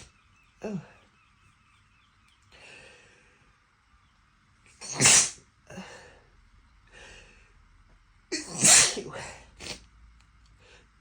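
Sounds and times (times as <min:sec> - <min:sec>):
person sneezing: 0:04.8 - 0:05.4, 0:08.3 - 0:09.8.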